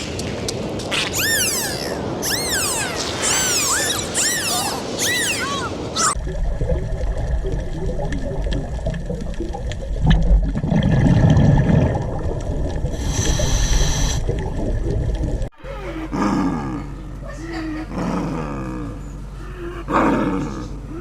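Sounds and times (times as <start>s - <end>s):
wavering pitched calls: 0.9s - 6.2s
large animal roaring: 16.0s - 16.9s, 17.9s - 21.0s.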